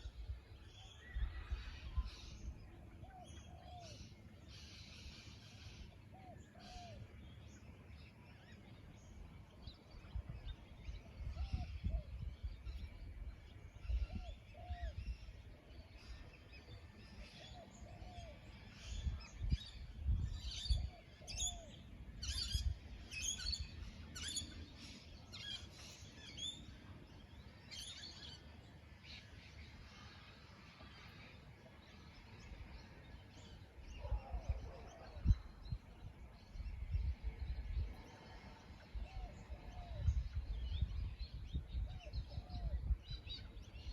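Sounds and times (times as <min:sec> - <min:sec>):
wind rumble on microphone: 0:00.0 - 0:04.0, 0:08.7 - 0:24.9, 0:31.8 - 0:43.9.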